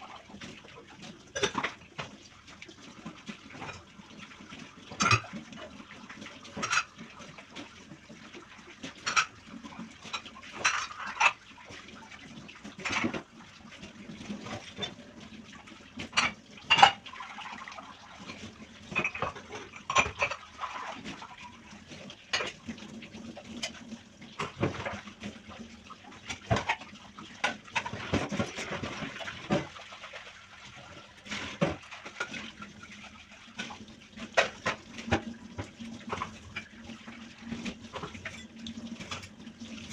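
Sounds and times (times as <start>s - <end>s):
running water: 0.0s - 39.9s
dishes and cutlery clattering: 1.4s - 1.8s, 4.9s - 5.4s, 6.5s - 7.0s, 9.0s - 9.4s, 10.0s - 11.4s, 16.0s - 17.1s, 18.2s - 20.9s, 22.3s - 22.6s, 26.3s - 29.7s, 37.5s - 39.4s.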